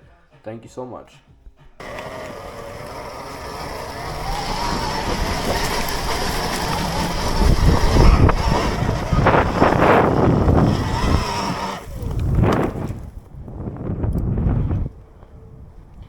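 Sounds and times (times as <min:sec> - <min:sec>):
faint motor whine: 0:01.8 - 0:13.0
tyres churning over muddy ground: 0:01.8 - 0:13.3
wind on microphone: 0:01.8 - 0:16.0.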